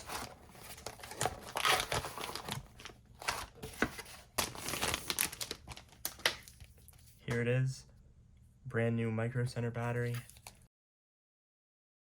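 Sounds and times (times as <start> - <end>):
plastic crinkling and rustling: 0.0 - 7.2.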